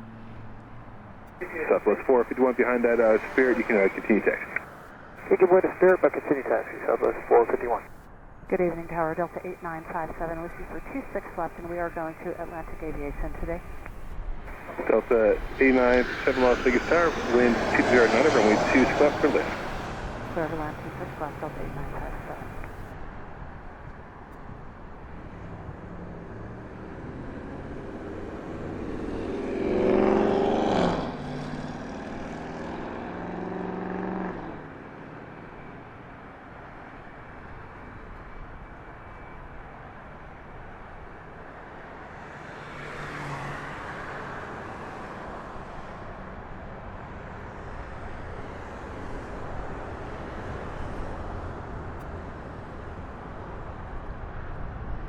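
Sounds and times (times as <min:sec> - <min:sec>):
vehicles passing close by: 0:00.0 - 0:08.0, 0:08.6 - 0:23.2, 0:25.0 - 0:37.0, 0:41.6 - 0:55.0
low traffic rumble: 0:00.0 - 0:32.4.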